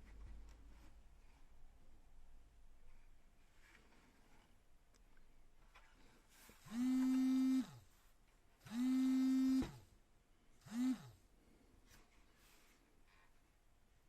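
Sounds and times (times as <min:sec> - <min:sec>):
small electric motor whirring: 0:06.6 - 0:07.8, 0:08.6 - 0:09.8, 0:10.6 - 0:11.2.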